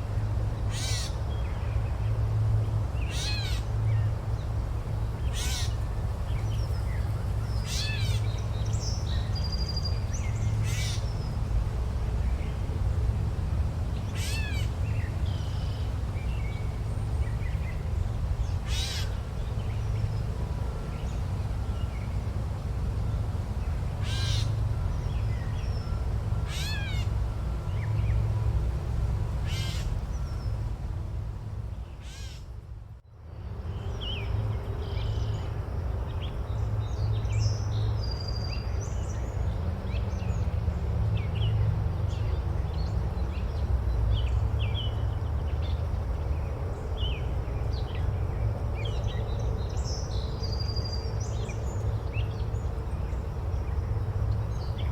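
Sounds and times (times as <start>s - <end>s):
large bird harsh calls: 0.7s - 1.2s, 3.1s - 3.7s, 5.3s - 5.8s, 18.6s - 19.2s, 24.0s - 24.6s, 26.4s - 27.1s, 29.4s - 30.0s, 32.0s - 32.5s.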